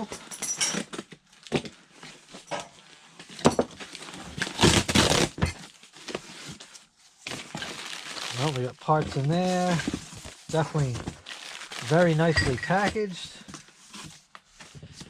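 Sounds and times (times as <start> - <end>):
packing material crinkling: 3.8 - 13.4.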